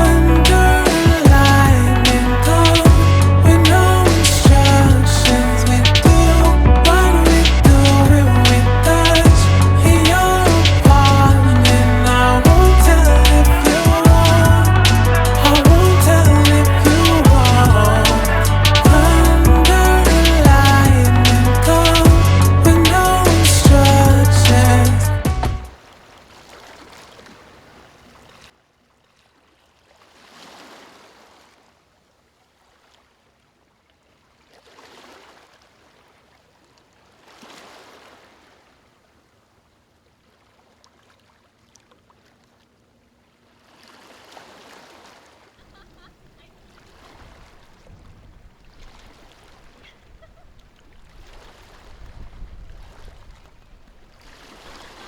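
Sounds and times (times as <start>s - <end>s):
low rumble: 0.0s - 25.7s
rushing water waves: 0.0s - 28.6s, 29.3s - 31.9s, 34.1s - 42.7s, 43.4s - 55.0s.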